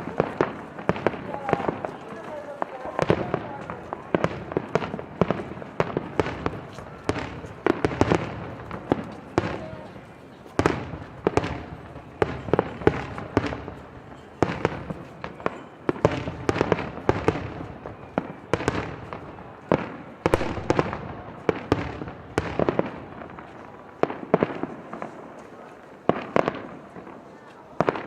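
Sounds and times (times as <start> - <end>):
aerial fireworks bangs: 19.8 - 23.4.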